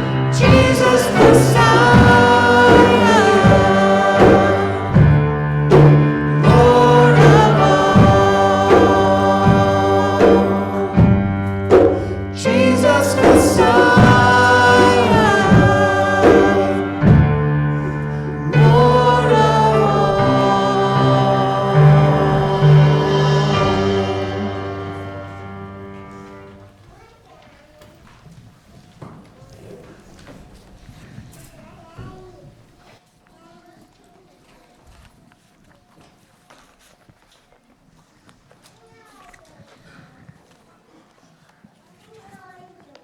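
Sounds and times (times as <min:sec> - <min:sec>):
sustained instrumental backing: 0:00.0 - 0:26.8
voices singing worship song: 0:00.0 - 0:26.8.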